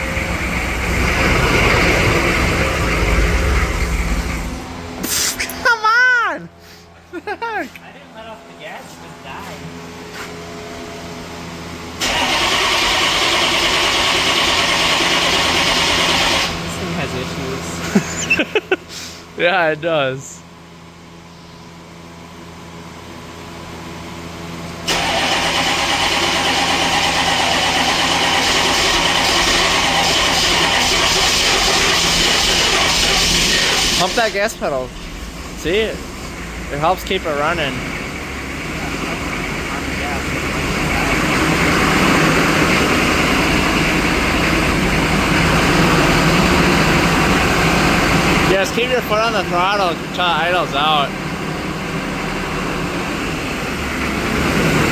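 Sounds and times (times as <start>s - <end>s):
diesel engine running unevenly: 0.0s - 5.2s, 10.6s - 19.4s, 22.0s - 54.9s
diesel engine cranking: 0.0s - 5.6s, 11.9s - 18.5s, 24.5s - 54.9s.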